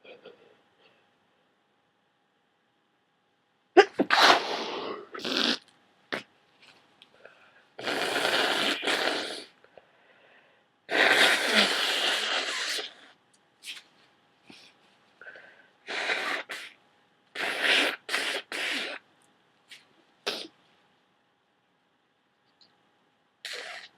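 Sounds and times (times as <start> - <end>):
person blowing nose: 3.8 - 6.2, 7.8 - 9.5, 10.9 - 13.0, 15.9 - 16.8, 17.4 - 19.0, 20.3 - 20.5, 23.4 - 23.9
person sneezing: 3.8 - 6.2, 17.4 - 19.0, 20.3 - 20.5.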